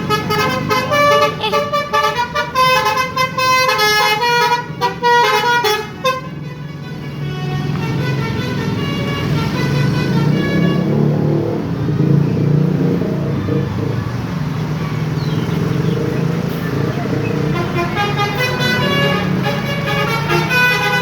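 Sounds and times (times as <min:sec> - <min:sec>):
musical air horns: 0:00.0 - 0:11.1, 0:17.4 - 0:21.0
heavy vehicle engine running: 0:00.0 - 0:21.0.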